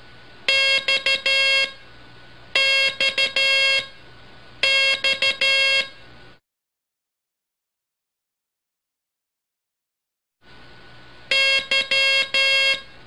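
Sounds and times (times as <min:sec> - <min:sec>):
steady hiss and low hum: 0:00.0 - 0:06.4, 0:10.4 - 0:13.0
buzzy morse code tone: 0:00.5 - 0:01.8, 0:02.6 - 0:04.0, 0:04.6 - 0:06.0, 0:11.3 - 0:13.0.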